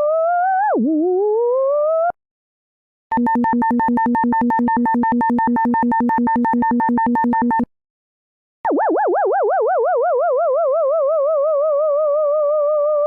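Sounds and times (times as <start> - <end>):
rapidly pulsing synthesized tone: 8.7 - 12.5.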